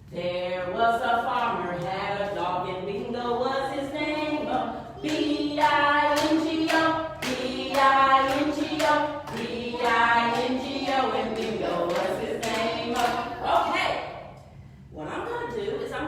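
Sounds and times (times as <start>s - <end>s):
group singing children's song: 0.0s - 14.3s
hand claps: 5.0s - 13.2s.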